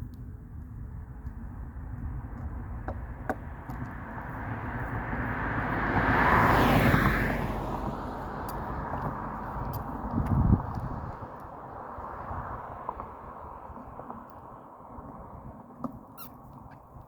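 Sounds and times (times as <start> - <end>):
vehicle driving past: 3.9 - 10.0.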